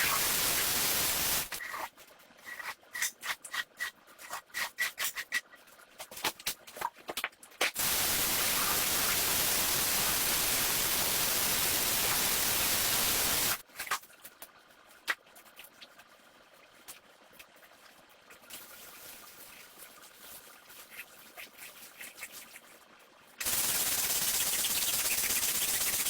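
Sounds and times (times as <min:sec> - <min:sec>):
cleaning spray hissing: 0:00.0 - 0:01.5, 0:07.8 - 0:13.6, 0:23.4 - 0:26.0.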